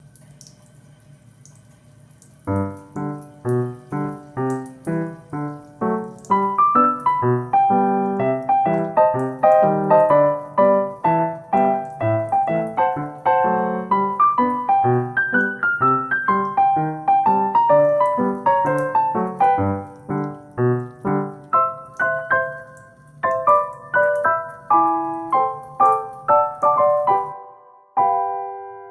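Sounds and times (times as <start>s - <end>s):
gentle piano music: 2.5s - 28.9s.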